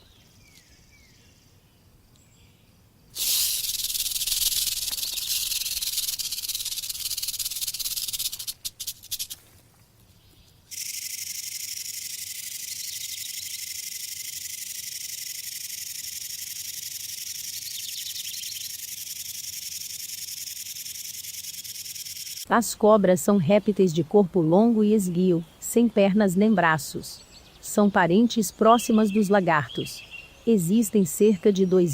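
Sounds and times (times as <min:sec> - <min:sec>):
rattlesnake rattle buzzing: 0:03.1 - 0:09.6, 0:10.7 - 0:22.5.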